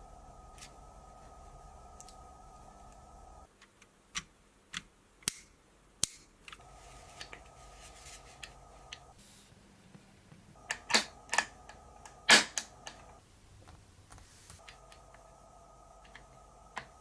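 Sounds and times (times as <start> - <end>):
faint electric hum: 0.0 - 17.0.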